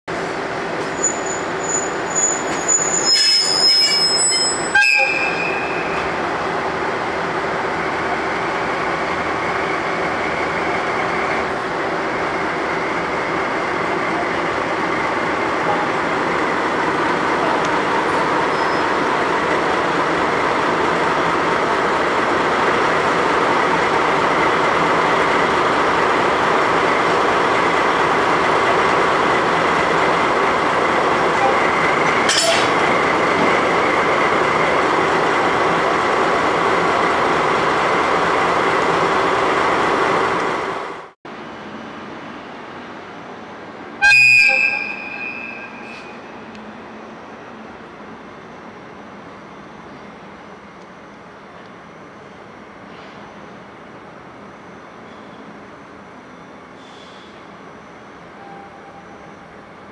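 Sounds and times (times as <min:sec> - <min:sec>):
diesel locomotive engine running: 0:00.1 - 0:59.9
high wheel squeals: 0:00.8 - 0:06.1, 0:18.4 - 0:19.0, 0:44.0 - 0:46.4.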